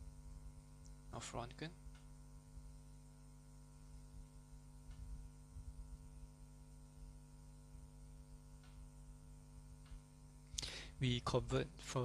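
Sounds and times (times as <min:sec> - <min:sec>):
low electrical hum: 0:00.0 - 0:12.0
faint soft ticks: 0:01.9 - 0:02.1.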